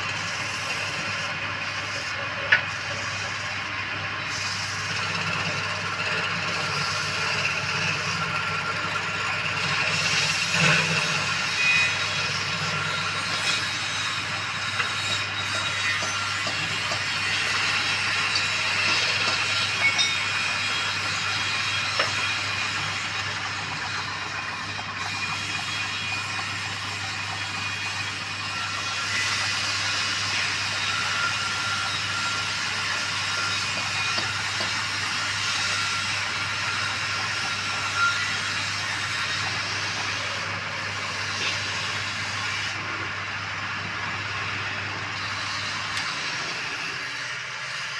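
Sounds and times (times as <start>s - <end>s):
wood lathe humming: 0.0s - 47.9s.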